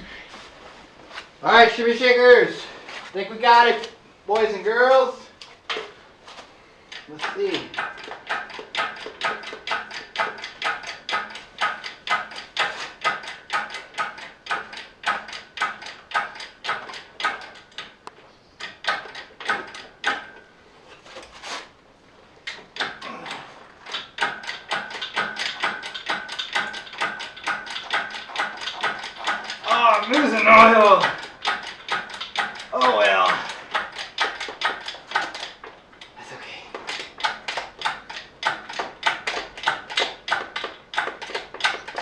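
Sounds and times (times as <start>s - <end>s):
engine hoist pumping clicks and squeaks: 6.9s - 20.5s, 22.4s - 36.2s, 36.8s - 42.0s.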